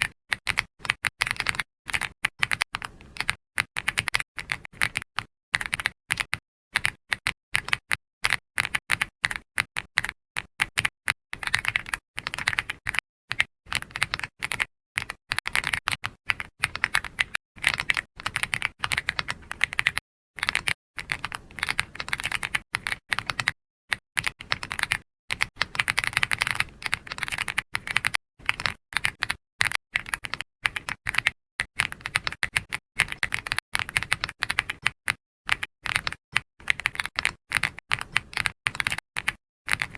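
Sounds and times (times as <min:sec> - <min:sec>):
computer keyboard typing: 0:00.0 - 0:39.9.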